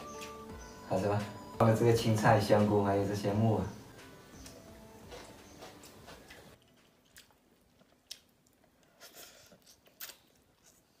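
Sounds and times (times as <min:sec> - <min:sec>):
soft chewing: 0:04.4 - 0:11.0.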